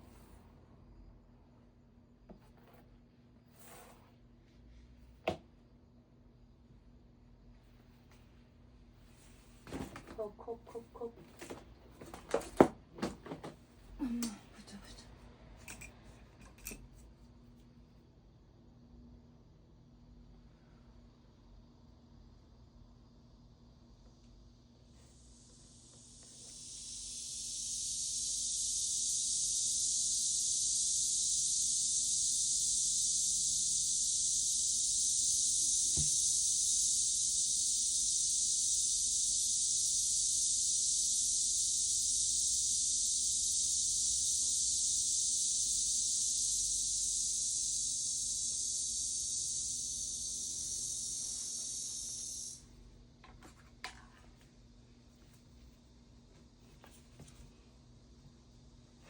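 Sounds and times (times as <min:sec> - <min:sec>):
aerosol can spraying hiss: 0:24.9 - 0:52.7.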